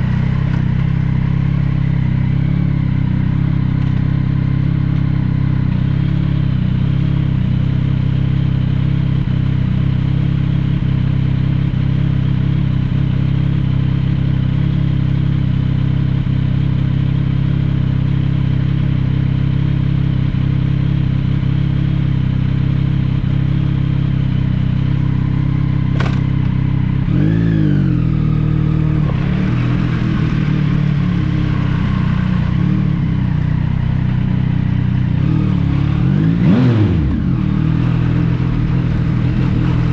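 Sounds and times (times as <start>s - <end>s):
motorcycle engine running: 0.0s - 39.9s
engine revving: 24.9s - 39.9s.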